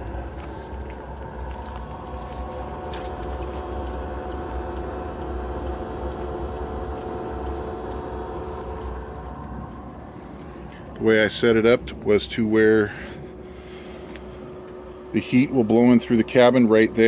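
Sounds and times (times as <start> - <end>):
regular ticking: 0.0 - 11.1
low rumble: 0.0 - 12.5
heater blower whining hum: 0.0 - 17.0.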